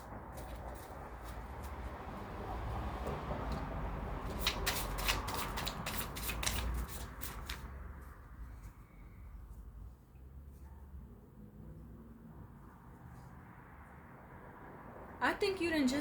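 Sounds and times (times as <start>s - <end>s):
cards being shuffled: 4.3s - 7.7s.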